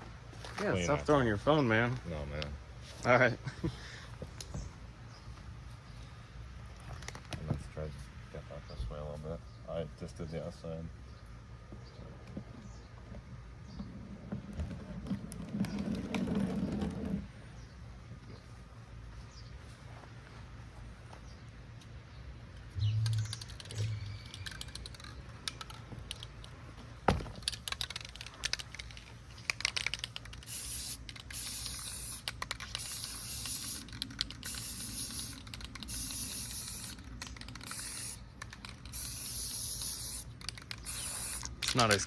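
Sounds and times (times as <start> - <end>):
light clicks and rattles: 22.5 - 34.7
low thumps: 22.8 - 24.5
spray paint can hissing: 22.8 - 25.8, 27.6 - 42.0.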